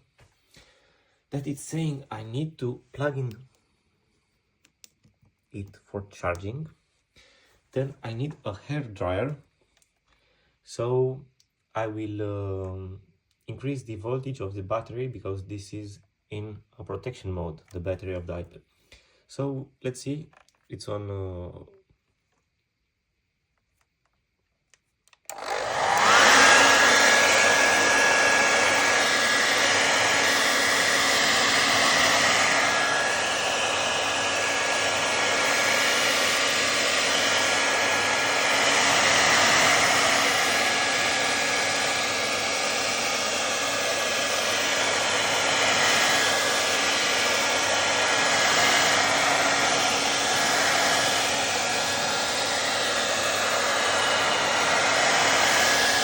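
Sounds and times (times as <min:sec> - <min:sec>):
hair dryer whine and air rush: 0:25.3 - 0:56.0.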